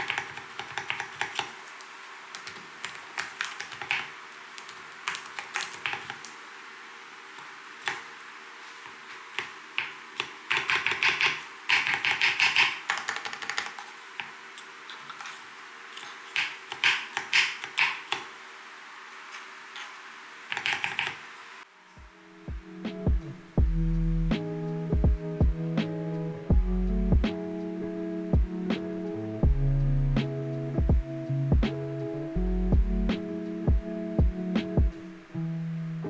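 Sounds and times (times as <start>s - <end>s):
soft keyboard keystrokes: 2.4s - 6.4s.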